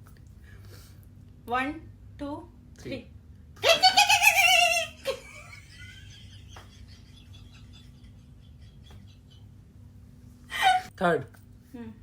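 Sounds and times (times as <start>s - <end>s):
person making high wavering cry: 3.6s - 5.0s.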